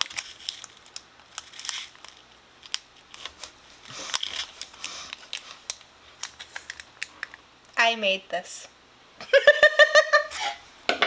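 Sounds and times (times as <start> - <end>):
plastic packaging crinkling: 0.0 - 7.4.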